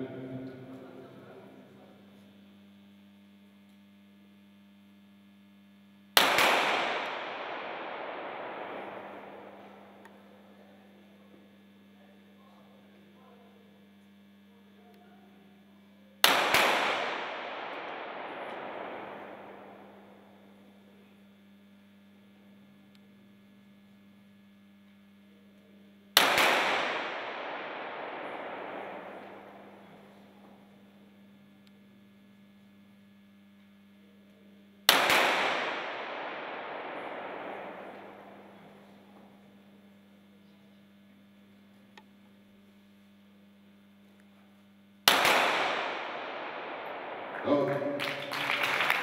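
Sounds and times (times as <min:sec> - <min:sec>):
steady low hum: 0:00.0 - 0:49.0
pistol shot with echo: 0:06.2 - 0:10.3, 0:16.2 - 0:20.8, 0:26.2 - 0:30.9, 0:34.9 - 0:39.6, 0:45.0 - 0:48.0.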